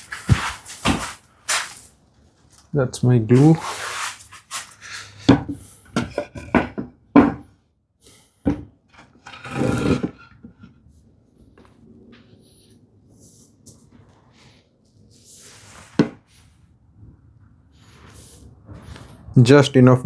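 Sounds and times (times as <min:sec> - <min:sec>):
wooden boards knocking and clattering: 0:00.0 - 0:01.2, 0:05.0 - 0:07.5, 0:08.5 - 0:10.2
wood rubbing: 0:00.0 - 0:01.8, 0:09.0 - 0:10.2.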